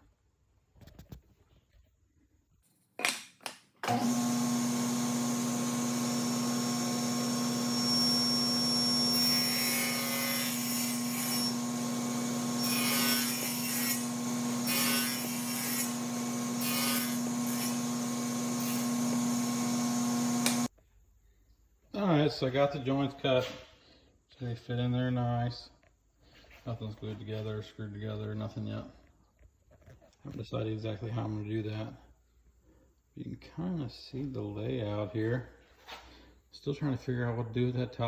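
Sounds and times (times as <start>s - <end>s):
power saw motor hum: 3.8s - 20.7s
saw cutting wood hiss: 3.9s - 20.7s.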